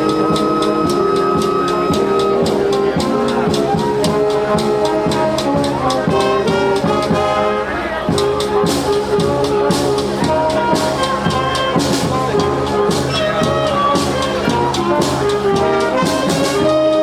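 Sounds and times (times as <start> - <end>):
steady drum-kit beat: 0.0 - 7.5, 8.1 - 17.0
concert band brass chords: 0.0 - 17.0.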